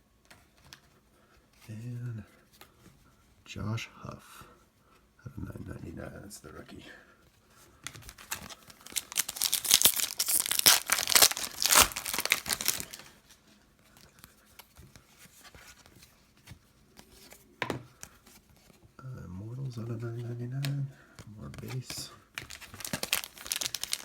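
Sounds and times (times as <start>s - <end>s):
plastic wrapper crinkling and tearing: 7.8s - 13.3s, 21.6s - 24.0s.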